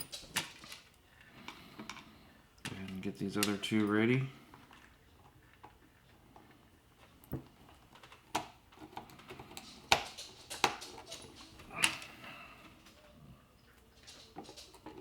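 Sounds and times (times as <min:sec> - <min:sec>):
clicks of screws and plastic case: 0:00.0 - 0:05.8.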